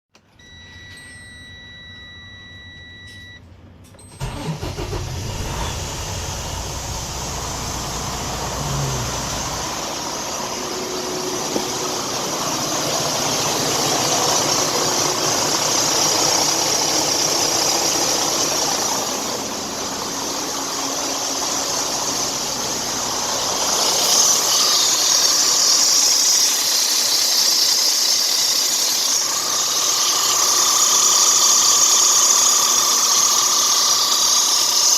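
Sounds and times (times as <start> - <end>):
steady high beep: 0.4 - 3.4
diesel engine starting and running: 2.1 - 34.9.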